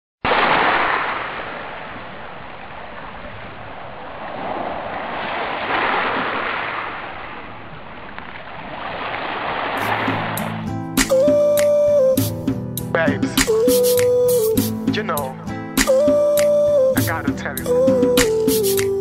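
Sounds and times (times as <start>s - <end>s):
surf breaking on a beach: 0.2s - 10.6s.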